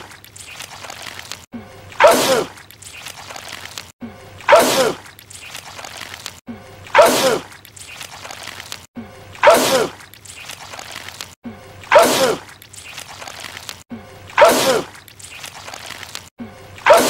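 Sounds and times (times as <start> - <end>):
man sneezing loudly: 14.4 - 14.9.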